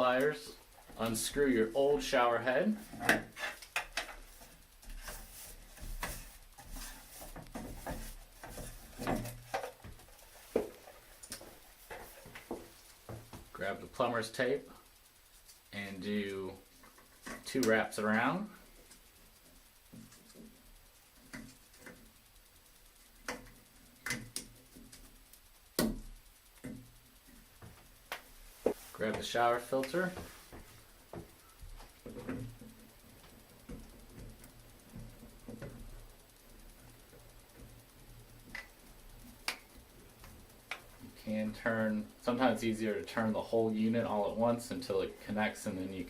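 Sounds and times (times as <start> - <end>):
clicks and knocks of plumbing parts: 2.9 - 13.6, 30.1 - 36.0.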